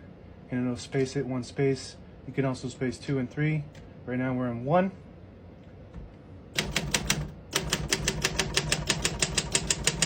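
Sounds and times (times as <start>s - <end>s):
manual typewriter typing: 6.6s - 10.0s.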